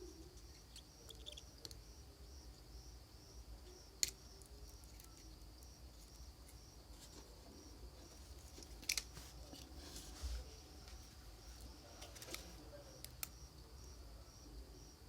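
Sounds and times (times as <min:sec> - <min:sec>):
crickets chirping: 0:00.0 - 0:15.0
rustling: 0:04.7 - 0:12.7.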